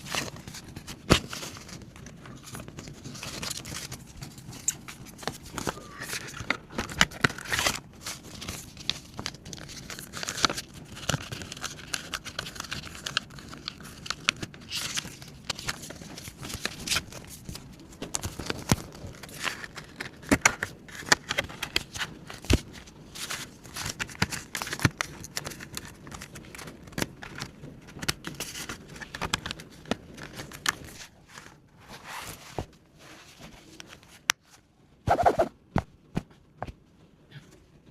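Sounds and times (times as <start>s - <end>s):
paper crinkling and rustling: 0.0s - 35.4s.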